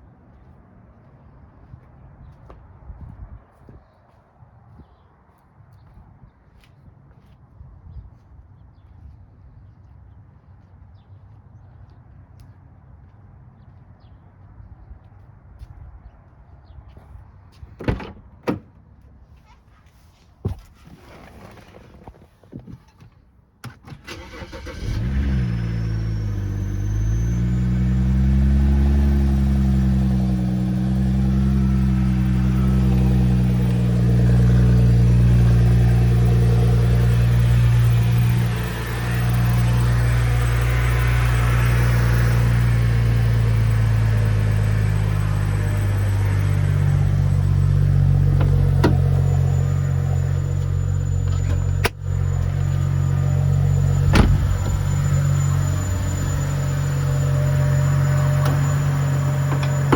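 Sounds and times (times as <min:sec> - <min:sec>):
car engine idling: 0:24.0 - 0:59.9.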